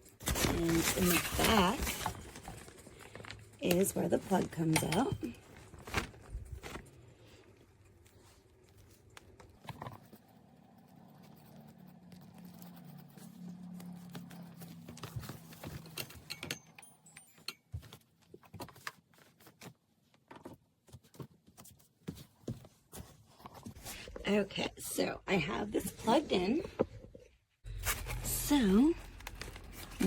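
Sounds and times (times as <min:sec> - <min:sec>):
handling clicks and knocks: 0:14.7 - 0:21.5.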